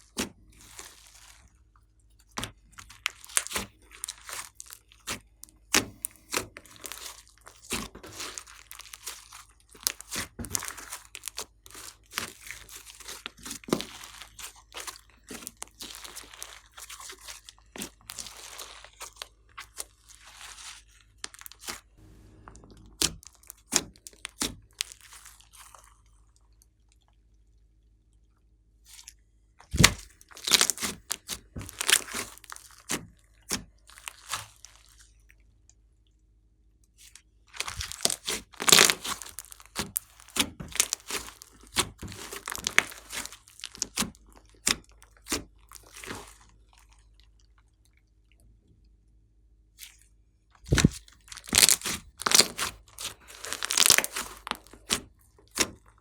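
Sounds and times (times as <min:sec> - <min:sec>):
slime snapping: 0:29.8 - 0:32.2, 0:37.6 - 0:44.1, 0:50.7 - 0:55.8.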